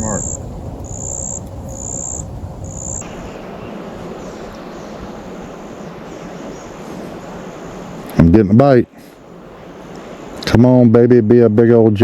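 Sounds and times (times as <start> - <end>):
insect buzzing chirps: 0.0 - 10.5
steady rushing hiss: 0.0 - 12.0.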